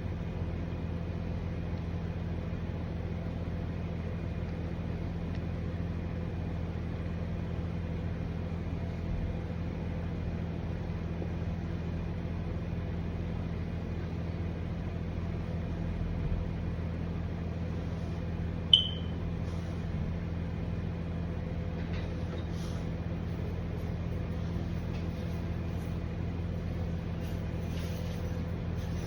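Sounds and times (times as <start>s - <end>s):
sharp click with high ping: 18.8s - 19.2s.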